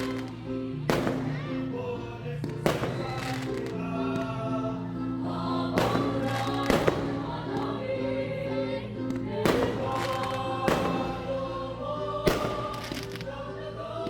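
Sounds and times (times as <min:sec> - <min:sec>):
fireworks bangs: 0:00.0 - 0:01.6, 0:02.4 - 0:03.8, 0:05.8 - 0:07.7, 0:09.4 - 0:11.4, 0:12.2 - 0:13.3
choral music: 0:00.0 - 0:14.0.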